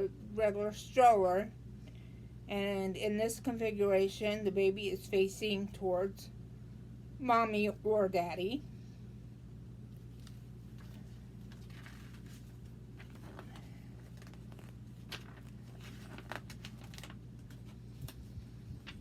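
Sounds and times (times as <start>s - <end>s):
steady low hum: 0.0s - 19.0s
packaging rustling: 10.1s - 19.0s.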